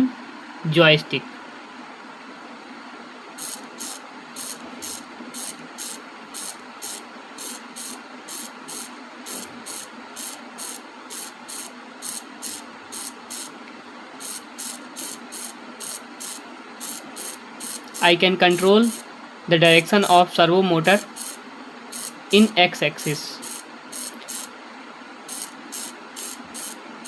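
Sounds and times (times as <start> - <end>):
steady hiss: 2.2 - 27.0
servo motor buzzing: 3.4 - 13.5, 14.2 - 19.0, 20.9 - 24.5, 25.3 - 26.8.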